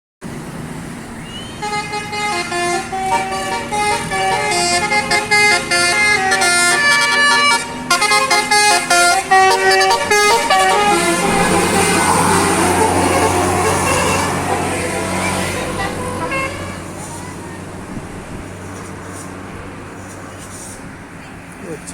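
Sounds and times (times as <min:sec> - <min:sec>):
road noise: 0:00.2 - 0:21.9
vehicle engine: 0:00.2 - 0:21.9
musical air horn playing a tune: 0:01.6 - 0:17.2.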